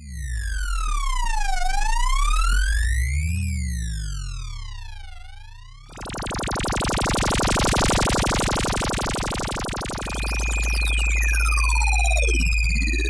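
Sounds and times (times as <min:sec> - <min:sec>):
deep bass drone: 0:05.9 - 0:13.0
falling pitch sweeps: 0:05.9 - 0:13.0
harsh pulsing buzz tone: 0:05.9 - 0:13.0
steady high tone: 0:05.9 - 0:13.0
sweeping synth tone: 0:05.9 - 0:13.0.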